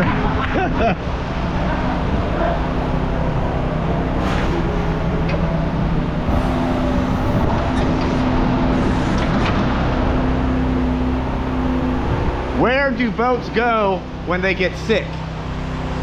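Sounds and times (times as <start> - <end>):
engine idling: 1.6 - 16.0.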